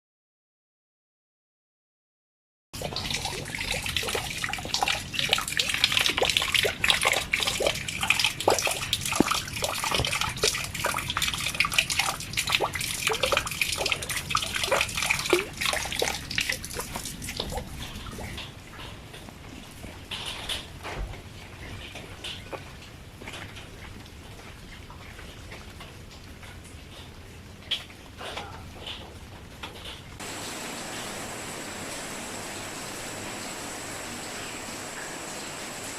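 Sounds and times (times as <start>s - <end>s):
water splashing into water: 2.8s - 18.4s
small bubbling plops: 2.8s - 18.5s.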